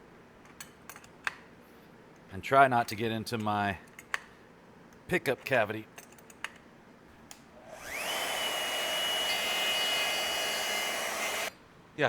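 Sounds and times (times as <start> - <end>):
electric wood router whining: 7.6 - 11.5.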